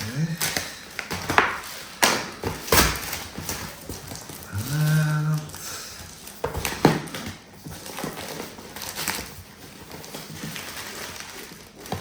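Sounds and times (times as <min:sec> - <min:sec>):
packaging rustling and crinkling: 0:00.0 - 0:12.0.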